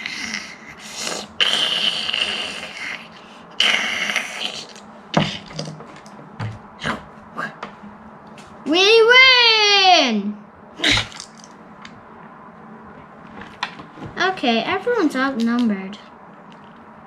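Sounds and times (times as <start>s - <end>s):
child making hissing mouth noises: 0.0s - 5.6s.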